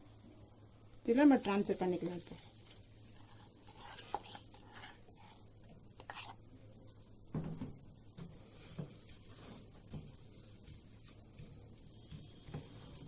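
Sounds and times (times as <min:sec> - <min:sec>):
utensil scraping a bowl: 0:03.1 - 0:07.0.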